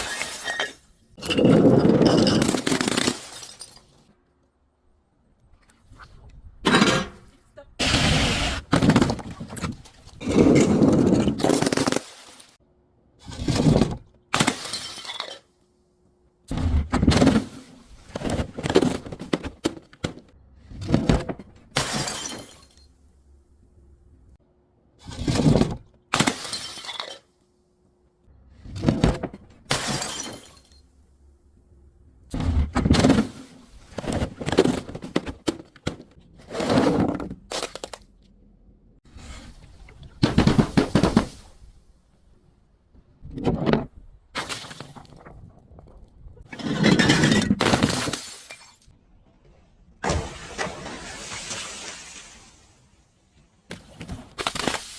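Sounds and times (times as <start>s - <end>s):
glass bottles smashing: 0.0s - 4.0s, 14.4s - 15.5s, 21.8s - 22.9s, 26.2s - 27.3s, 29.7s - 30.8s, 46.9s - 48.9s.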